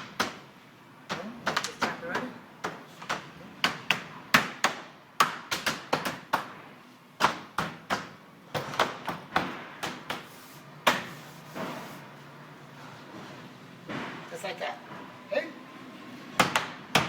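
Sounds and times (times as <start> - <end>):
sharp taps on window trim: 1.1 - 6.6.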